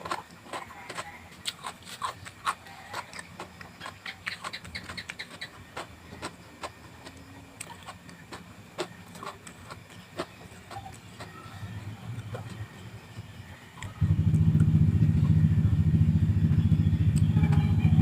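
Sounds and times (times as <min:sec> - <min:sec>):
person chewing vegetables: 0:00.0 - 0:11.4.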